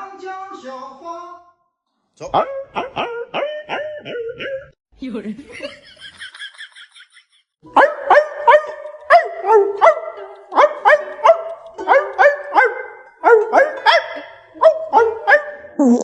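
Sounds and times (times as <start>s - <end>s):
dog barking rapidly: 7.8s - 15.7s.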